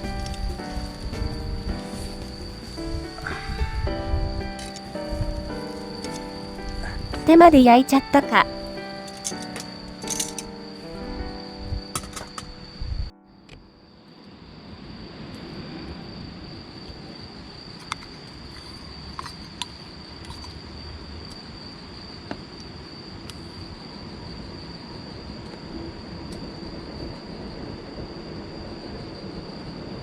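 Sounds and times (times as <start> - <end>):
insects trilling: 0.0 - 7.0
low background noise: 7.3 - 8.4.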